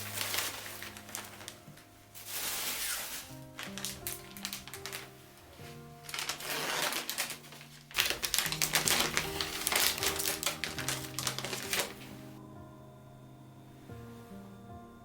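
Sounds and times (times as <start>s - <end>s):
soft background music: 0.0s - 15.0s
rapid dense clicking and crackling: 6.1s - 12.0s.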